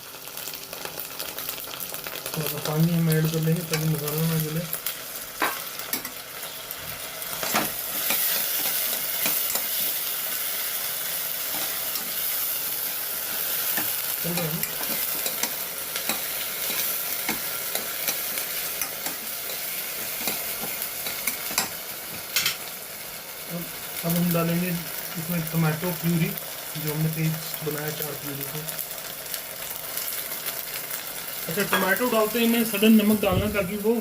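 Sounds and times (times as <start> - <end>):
masala sizzling in hot oil: 0.0 - 34.0
spoon scraping a pan: 7.3 - 10.0, 13.3 - 21.8.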